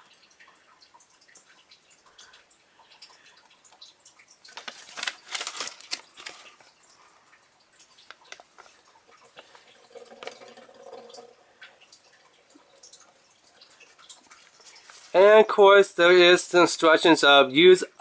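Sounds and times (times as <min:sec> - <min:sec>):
paper rustling: 0:04.5 - 0:06.6, 0:14.5 - 0:15.2.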